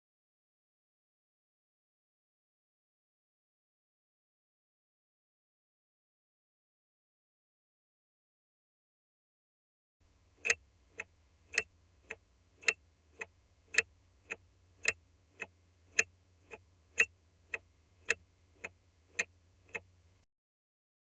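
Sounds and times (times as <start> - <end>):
turn signal ticking: 10.4 - 19.9.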